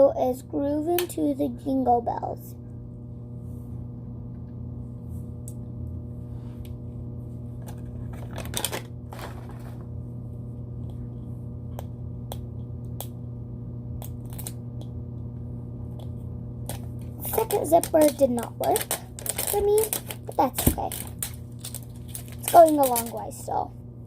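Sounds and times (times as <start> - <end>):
steady electrical hum: 0.0 - 24.0
plastic packaging rustle: 7.8 - 9.8, 16.7 - 23.4.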